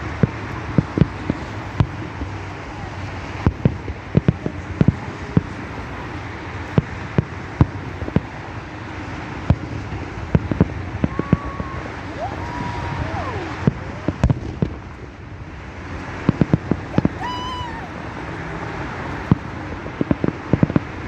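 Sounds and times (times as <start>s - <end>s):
traffic rushing: 0.0s - 21.0s
wind: 0.0s - 21.0s
wavering firework whistles: 16.9s - 18.6s.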